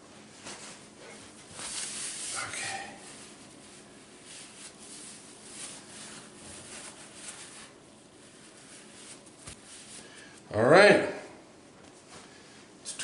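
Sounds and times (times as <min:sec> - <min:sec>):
hands rubbing and rustling: 0:00.3 - 0:10.4
soft scrapes: 0:00.4 - 0:10.3.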